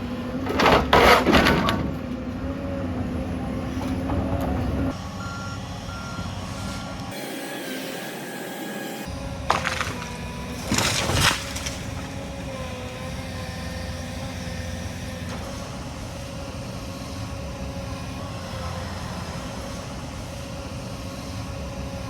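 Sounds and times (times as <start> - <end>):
excavator engine droning: 0.0 - 22.0
tree crashing down: 9.4 - 12.2.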